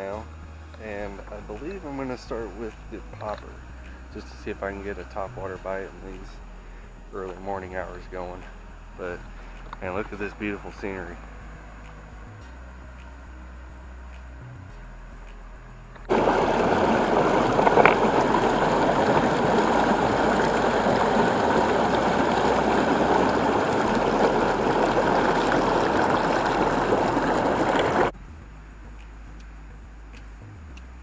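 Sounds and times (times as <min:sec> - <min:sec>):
water rushing through spillway: 0:16.1 - 0:28.1.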